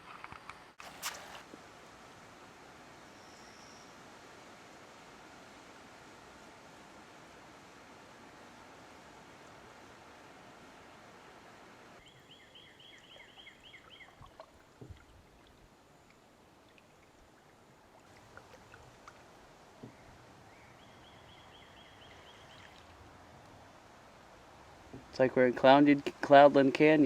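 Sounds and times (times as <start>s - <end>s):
river ambience: 0.0s - 27.0s
bird chirping: 12.0s - 14.4s, 19.9s - 22.8s.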